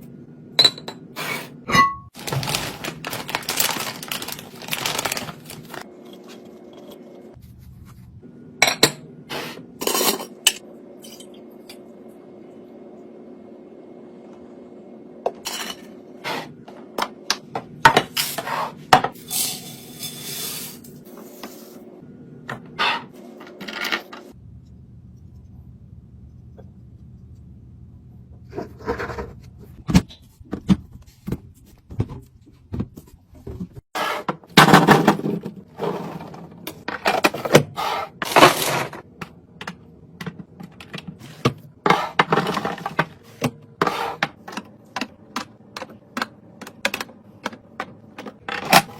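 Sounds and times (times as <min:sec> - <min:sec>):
containers clattering in a fridge: 0:00.6 - 0:06.4, 0:28.4 - 0:48.9
containers scraping: 0:01.2 - 0:07.0, 0:40.8 - 0:45.4.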